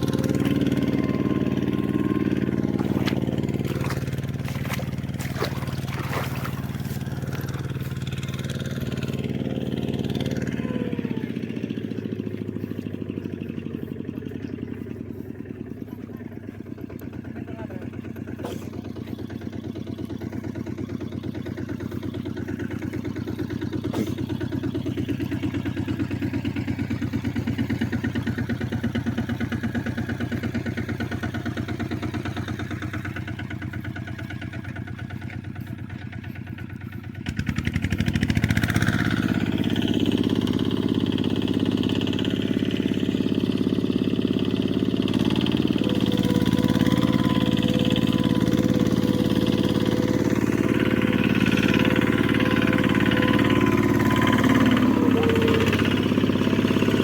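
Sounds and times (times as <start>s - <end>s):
engine running: 0.0s - 57.0s.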